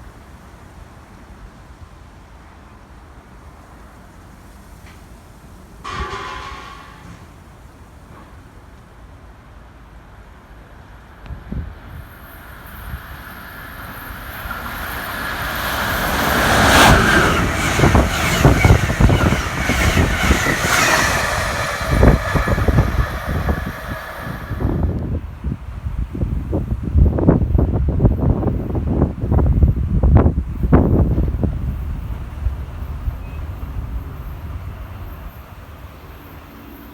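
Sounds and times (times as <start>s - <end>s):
passenger train passing: 0.5s - 36.9s
train wheel clatter: 5.8s - 8.9s, 12.7s - 25.2s
high hiss from rails: 10.2s - 25.1s.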